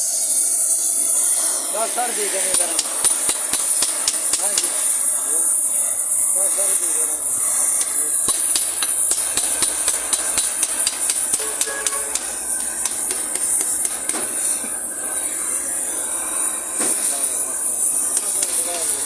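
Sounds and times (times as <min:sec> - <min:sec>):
high hiss: 0:00.0 - 0:19.0
tool tapping: 0:02.5 - 0:04.9, 0:07.7 - 0:15.4, 0:16.7 - 0:17.1, 0:17.8 - 0:19.0.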